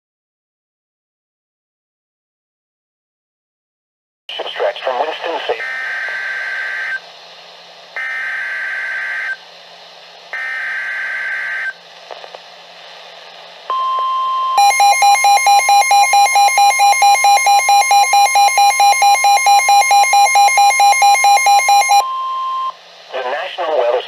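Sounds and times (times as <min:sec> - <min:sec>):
buzzy alarm beeping: 0:13.7 - 0:22.7
steady warning tone: 0:13.7 - 0:22.8
screechy data bursts: 0:14.6 - 0:22.0.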